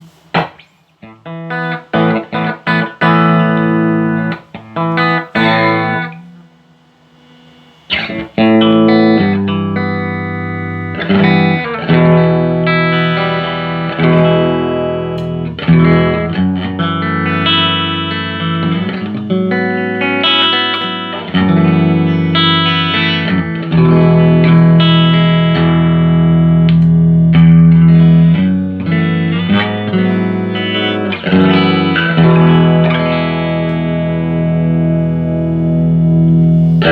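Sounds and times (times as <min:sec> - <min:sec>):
electric guitar chords: 0:00.0 - 0:36.9.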